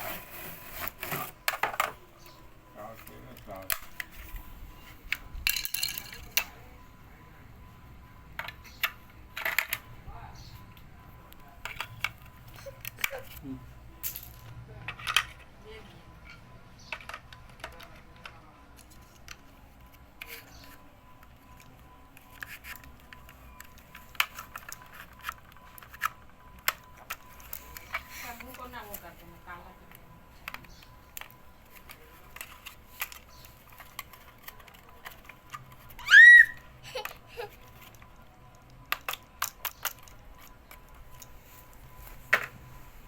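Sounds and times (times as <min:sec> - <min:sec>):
handling clicks and snaps: 0:29.9 - 0:36.0, 0:37.0 - 0:42.6.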